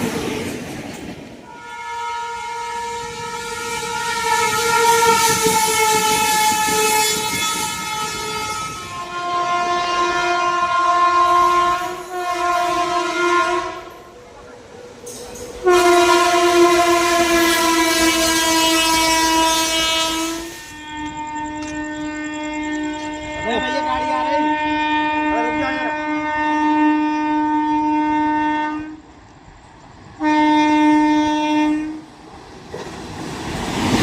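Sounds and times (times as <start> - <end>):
locomotive air horn blasts: 1.4 - 14.2, 15.5 - 29.0, 30.2 - 32.0
lower steady horn tone: 1.5 - 14.5, 15.6 - 29.0, 30.2 - 32.0.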